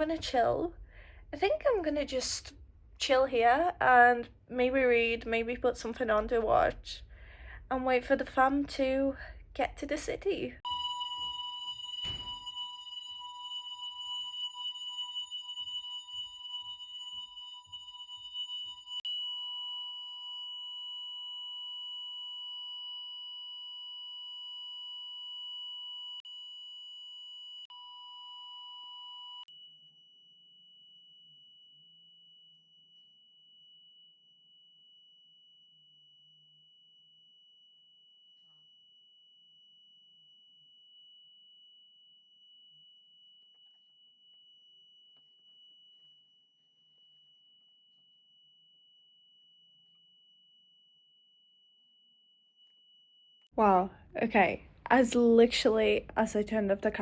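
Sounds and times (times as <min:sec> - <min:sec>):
fire alarm electronic tone: 0:10.6 - 0:37.4, 0:38.1 - 0:53.5.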